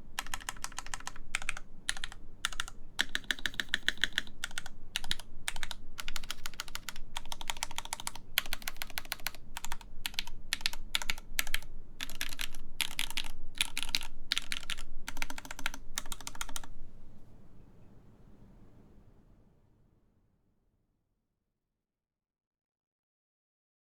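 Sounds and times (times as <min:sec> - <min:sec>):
mechanical keyboard typing: 0:00.0 - 0:16.7.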